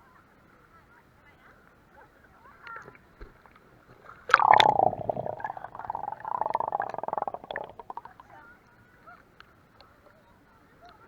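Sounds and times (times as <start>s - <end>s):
muffled underwater bubbling: 4.3s - 8.3s.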